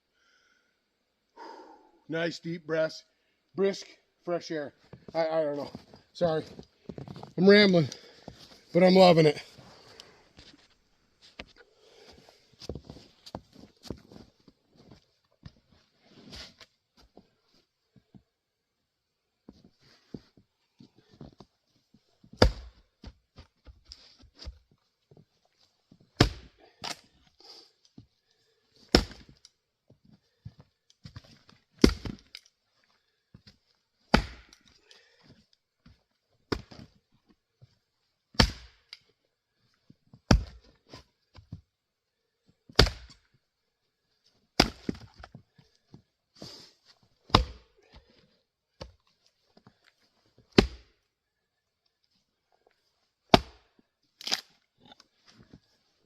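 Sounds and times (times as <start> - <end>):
axe chopping wood: 22.4 - 22.8, 26.2 - 27.0, 28.9 - 29.4, 31.8 - 32.3, 34.1 - 34.6, 38.4 - 38.9, 40.3 - 40.6, 42.7 - 43.2, 44.6 - 45.0, 47.3 - 47.8, 50.5 - 51.0, 53.3 - 53.6.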